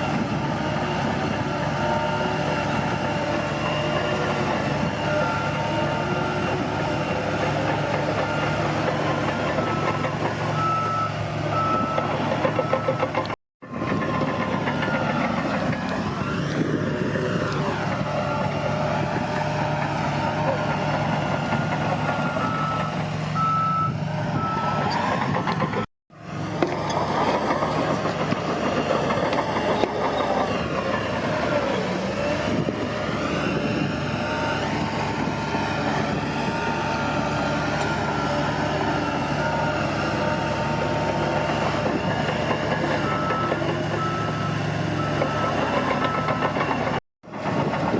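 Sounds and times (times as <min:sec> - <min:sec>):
bulldozer diesel engine: 0:00.0 - 0:47.9
reversing alarm beeping: 0:01.8 - 0:16.6, 0:20.8 - 0:25.0, 0:33.4 - 0:46.9.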